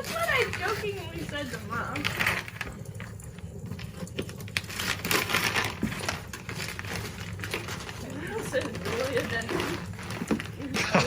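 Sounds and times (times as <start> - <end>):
wrapping paper crinkling and tearing: 0.0 - 11.0.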